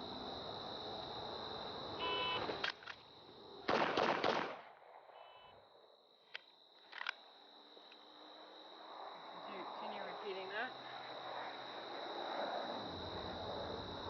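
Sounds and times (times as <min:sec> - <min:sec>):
insects chirring: 0:00.0 - 0:14.0
handgun shots: 0:03.7 - 0:04.6
sharp clicks: 0:06.3 - 0:07.2.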